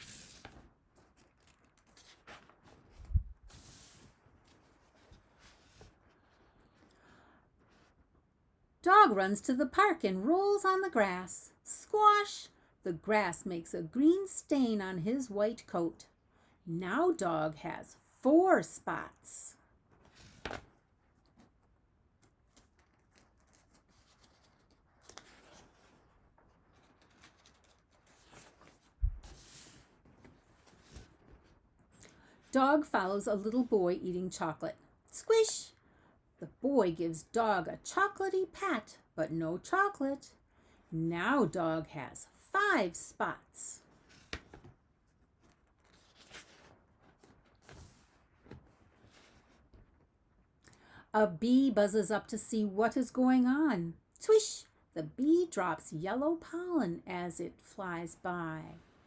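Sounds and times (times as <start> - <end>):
paper page rustling: 0.0 - 6.9, 19.9 - 31.7, 43.9 - 50.0.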